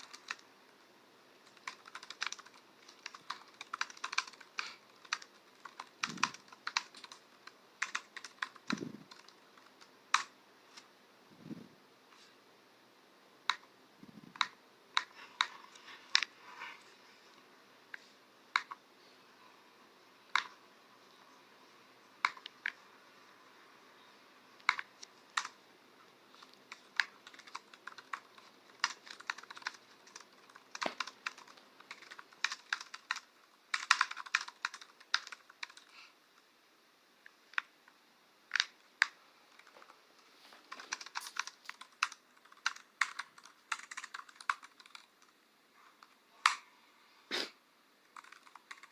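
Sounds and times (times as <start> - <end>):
computer keyboard typing: 0.0 - 0.5, 1.4 - 10.4, 14.3 - 16.8, 18.5 - 18.8, 20.3 - 20.6, 22.2 - 22.8, 24.6 - 25.6, 26.3 - 36.0, 38.5 - 40.0, 40.6 - 45.3, 48.1 - 48.9.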